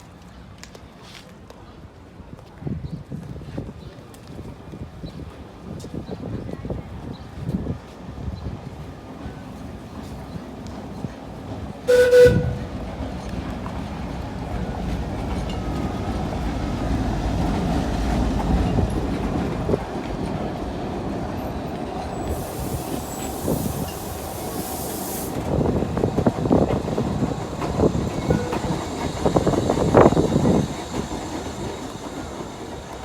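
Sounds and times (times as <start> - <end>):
train wheels rumbling: 7.2 - 33.0
hiss: 22.2 - 26.3.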